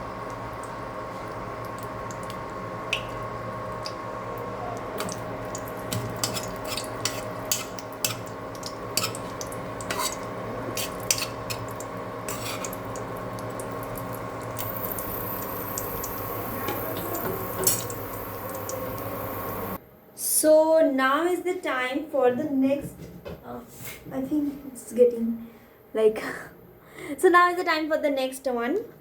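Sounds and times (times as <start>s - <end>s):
frying oil crackling and popping: 0.0s - 19.8s
steady hum: 0.0s - 19.8s.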